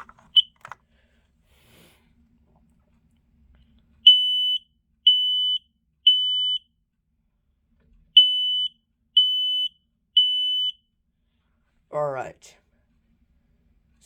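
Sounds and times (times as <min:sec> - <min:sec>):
smoke alarm beeping: 0:04.0 - 0:06.7, 0:08.2 - 0:10.8.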